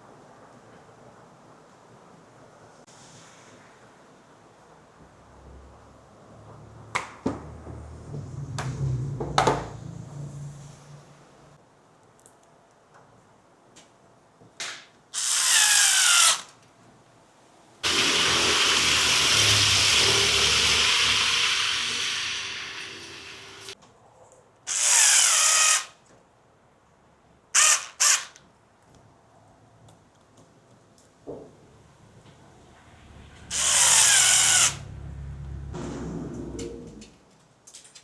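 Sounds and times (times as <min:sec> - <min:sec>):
cordless screwdriver whining: 0:15.2 - 0:16.5, 0:17.8 - 0:23.8, 0:24.7 - 0:25.9, 0:27.6 - 0:28.3, 0:33.5 - 0:34.8.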